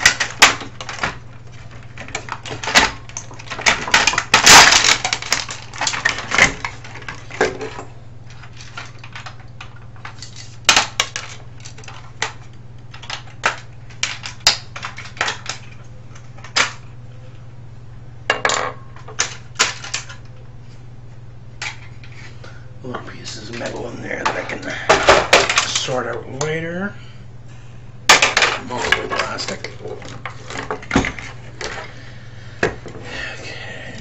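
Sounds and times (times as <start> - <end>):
plastic parts clicking and clattering: 0.0 - 16.9, 19.0 - 20.3, 23.5 - 26.0.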